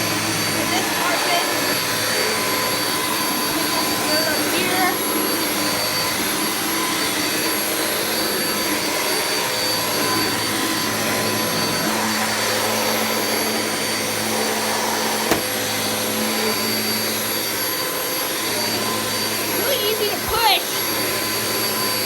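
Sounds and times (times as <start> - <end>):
vacuum cleaner running: 0.0 - 22.0.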